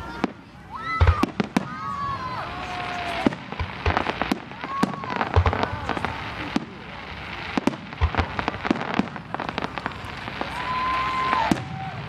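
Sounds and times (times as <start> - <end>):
fireworks bangs and crackles: 0.0 - 12.0
heavy firework thumps: 7.6 - 10.0.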